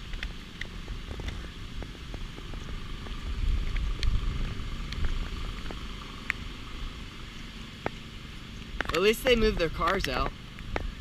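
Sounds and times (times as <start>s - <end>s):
small ticks: 0.0s - 6.5s
wind buffeting microphone: 0.0s - 11.0s.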